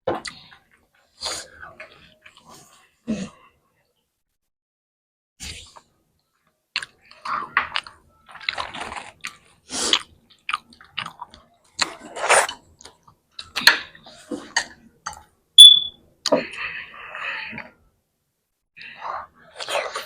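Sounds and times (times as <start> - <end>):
chewing and eating noises: 0.1 - 3.0, 6.7 - 15.3, 18.8 - 20.0
sharp high squeak: 15.6 - 16.0.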